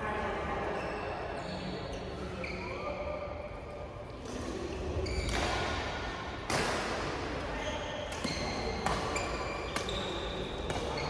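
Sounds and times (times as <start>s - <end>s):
shoes squeaking on court floor: 4.9s - 5.5s, 7.6s - 11.0s.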